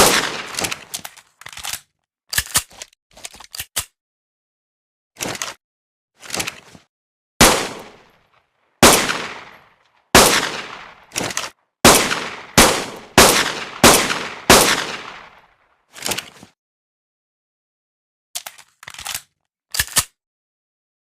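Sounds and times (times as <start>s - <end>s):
pistol gunshots: 0.0s - 0.9s, 7.4s - 8.1s, 8.8s - 9.6s, 10.2s - 15.4s.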